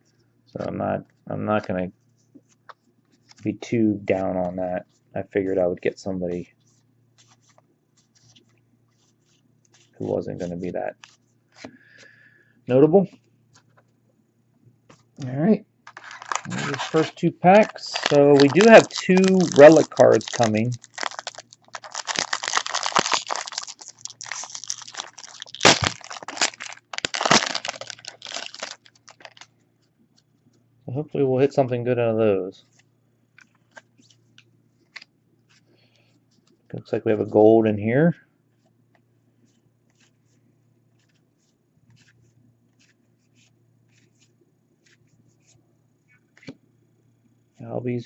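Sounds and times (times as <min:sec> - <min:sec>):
low steady hum: 0:00.0 - 0:48.0
trading cards swishing: 0:15.9 - 0:20.8, 0:41.0 - 0:45.6
foil wrappers crinkling: 0:15.9 - 0:29.5.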